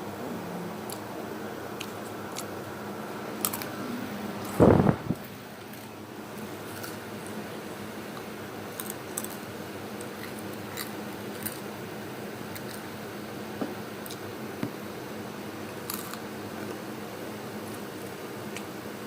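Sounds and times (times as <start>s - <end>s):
low background hum: 0.0s - 19.0s
chips crunching while chewed: 8.7s - 9.4s, 10.0s - 11.7s, 15.8s - 16.2s.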